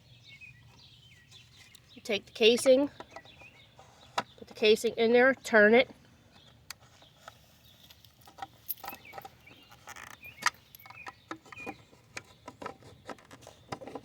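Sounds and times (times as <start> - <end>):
bird chirps: 0.0 - 4.6, 6.3 - 13.8
plastic clicks and knocks: 8.2 - 14.0.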